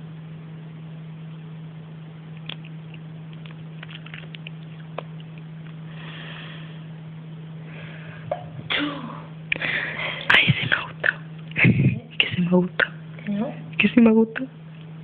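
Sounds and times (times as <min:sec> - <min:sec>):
low electrical hum: 0:00.0 - 0:15.0
small clicks and rustles: 0:02.4 - 0:05.8
breathy sniff: 0:05.9 - 0:06.8.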